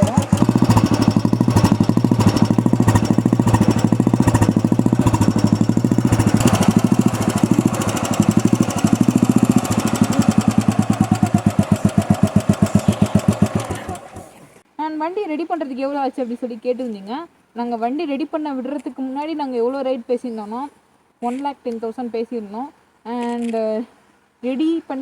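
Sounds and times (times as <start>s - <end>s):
motorcycle engine idling: 0.0s - 14.6s.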